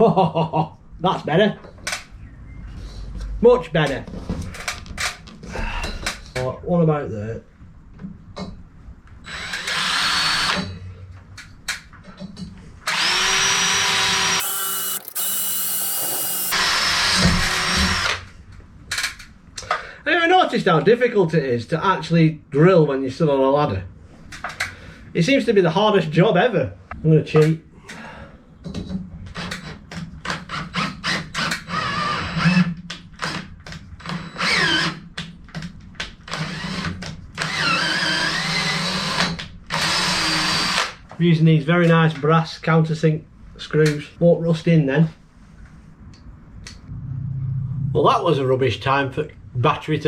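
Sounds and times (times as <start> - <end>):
cordless drill whining: 9.2 - 10.6, 12.9 - 18.2.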